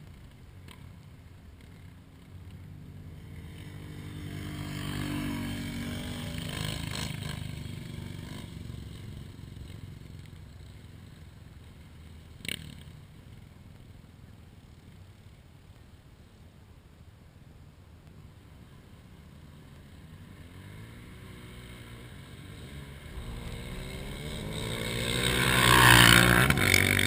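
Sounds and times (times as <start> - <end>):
engine running: 22.5 - 27.0.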